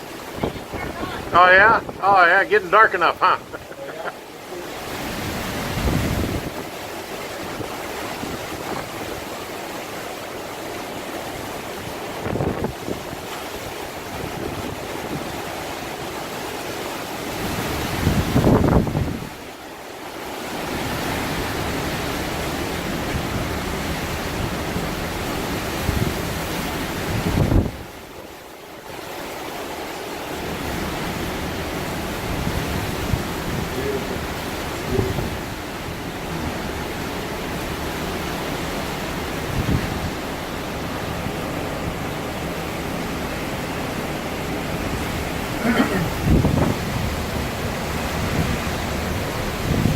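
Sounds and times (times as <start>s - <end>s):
wind gusts hitting microphone: 0.0s - 4.0s, 4.8s - 6.8s, 11.8s - 15.5s, 17.3s - 19.4s, 20.8s - 28.0s, 30.5s - 49.9s
strong wind rushing: 4.9s - 6.7s, 17.4s - 19.4s, 39.3s - 40.3s, 46.0s - 48.7s.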